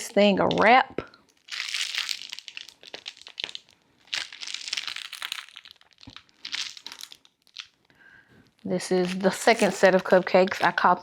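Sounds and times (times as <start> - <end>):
plastic crinkling and rustling: 0.4 - 11.0.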